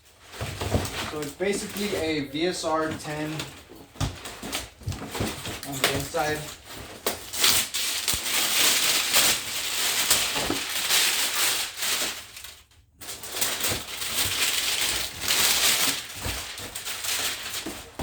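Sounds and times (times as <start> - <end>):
packaging rustling and crinkling: 0.0 - 18.0.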